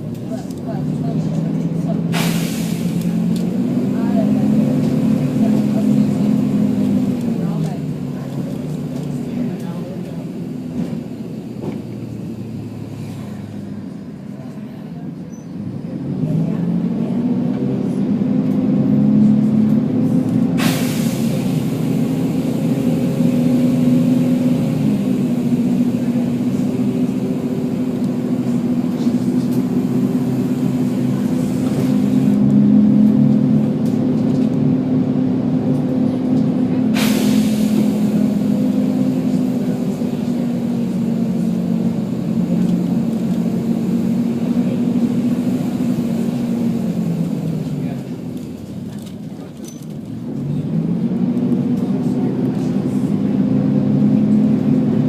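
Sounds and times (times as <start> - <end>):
diesel bus engine running: 0.0 - 55.0
compressed air hisses: 20.6 - 22.0.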